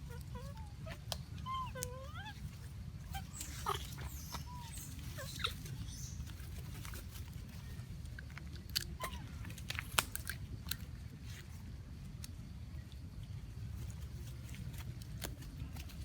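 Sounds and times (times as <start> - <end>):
baby monkey squeaking and chirping: 0.1 - 2.4, 3.1 - 6.6.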